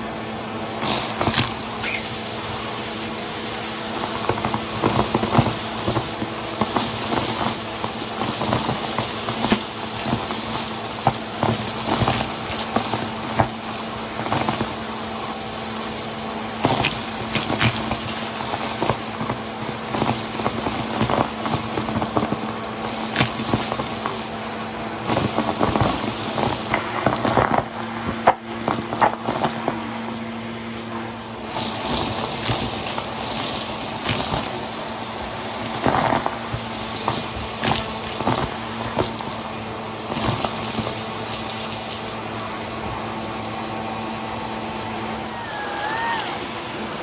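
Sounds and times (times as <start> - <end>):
debris crackling in vacuum: 0.0 - 47.0
vacuum cleaner motor humming: 0.0 - 47.0.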